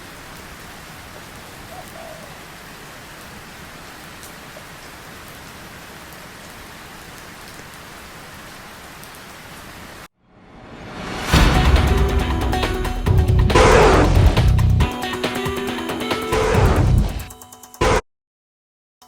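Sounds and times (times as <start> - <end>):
steady rain falling: 0.0 - 14.8.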